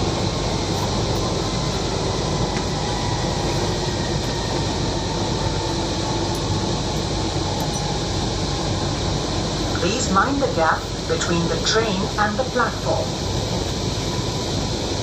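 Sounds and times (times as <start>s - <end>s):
train rumbling on rails: 0.0s - 15.0s
air conditioning hum: 6.1s - 15.0s.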